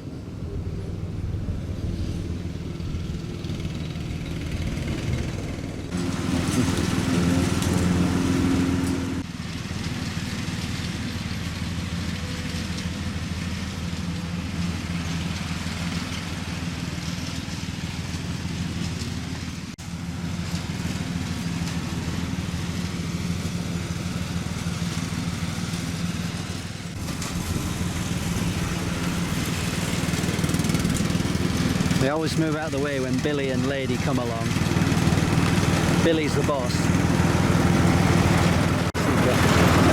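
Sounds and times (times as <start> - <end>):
lawn mower engine running: 0.0 - 39.9.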